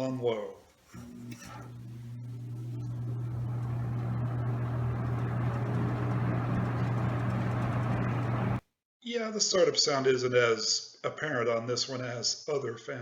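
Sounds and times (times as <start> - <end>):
box fan motor humming: 0.9 - 8.6.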